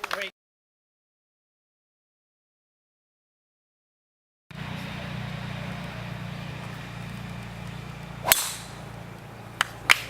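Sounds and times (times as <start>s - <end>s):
golf club striking ball: 7.7s - 10.0s.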